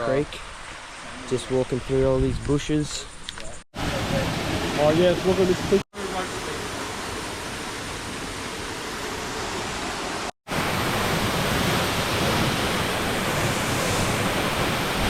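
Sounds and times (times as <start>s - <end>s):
waterfall rushing: 3.8s - 15.0s.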